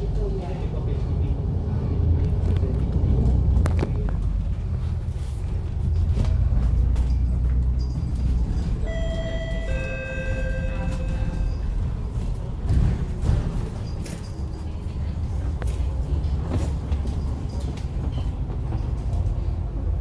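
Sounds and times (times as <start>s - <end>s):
bus engine and road rumble: 0.0s - 20.0s
two-note chime: 8.8s - 11.8s.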